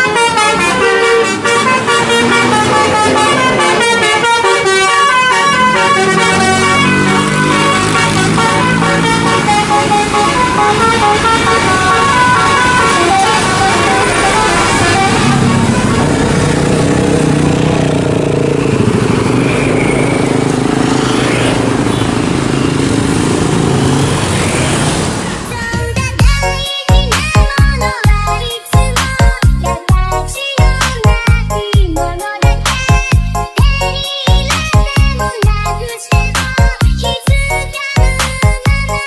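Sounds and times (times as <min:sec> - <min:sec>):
musical bus horn: 0:00.0 - 0:17.3
bus engines: 0:00.0 - 0:26.6
traffic: 0:00.0 - 0:39.0.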